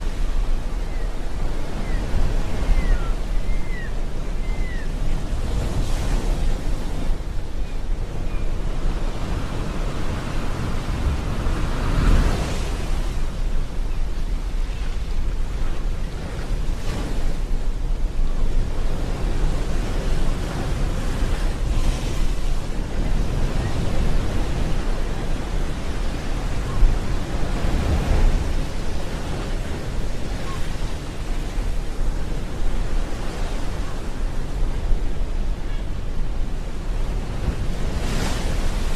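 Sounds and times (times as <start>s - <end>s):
wind rumbling on microphone: 0.0s - 38.9s
faint high bird calls: 0.8s - 5.3s.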